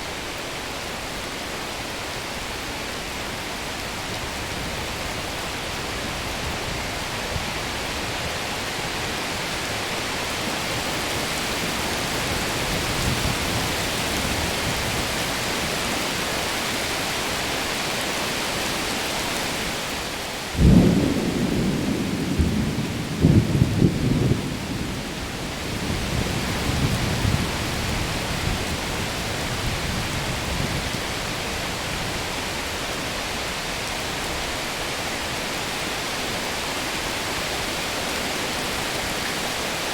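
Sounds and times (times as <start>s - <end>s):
steady rain: 0.0s - 39.9s
thunder cracks and rumble: 20.6s - 28.7s.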